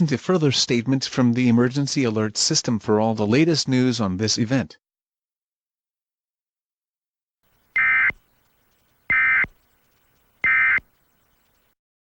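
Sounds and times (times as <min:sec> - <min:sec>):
warbling two-tone digital code bursts: 0:07.8 - 0:08.2, 0:09.0 - 0:11.5.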